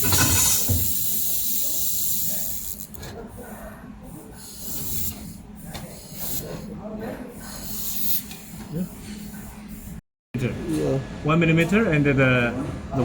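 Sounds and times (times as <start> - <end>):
laser welder torch hissing: 0.0 - 3.2, 4.2 - 6.7, 7.3 - 10.0.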